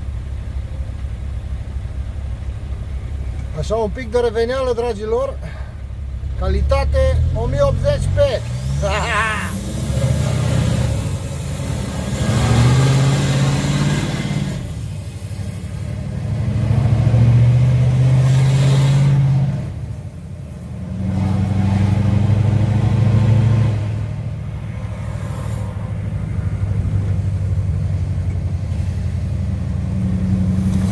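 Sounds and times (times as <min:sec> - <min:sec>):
diesel engine running under throttle: 0:00.0 - 0:30.9.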